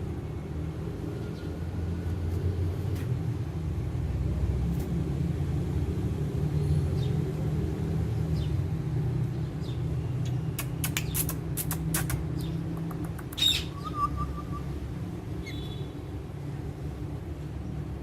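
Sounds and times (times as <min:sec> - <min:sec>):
sharp clicks: 0:10.3 - 0:13.6
parrot chirping: 0:10.9 - 0:14.7.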